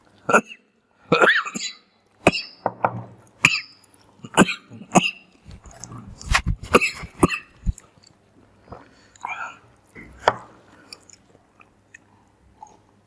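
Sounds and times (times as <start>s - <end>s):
person coughing: 3.5s - 5.2s, 6.6s - 7.8s
person gulping and slurping noodles: 4.1s - 13.0s.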